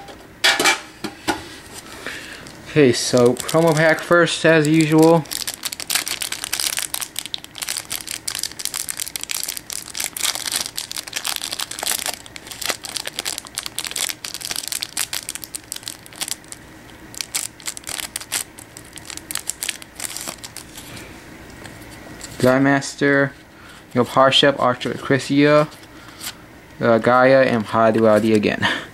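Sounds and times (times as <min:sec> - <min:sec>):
foil wrapper tearing and crinkling: 0:02.4 - 0:20.8.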